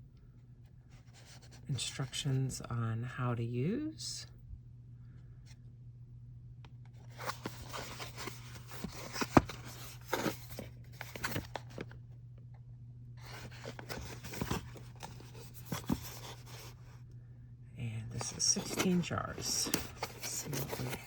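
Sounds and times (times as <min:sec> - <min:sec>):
packaging rustling and crinkling: 0:07.1 - 0:12.0, 0:13.2 - 0:16.8, 0:18.2 - 0:21.0.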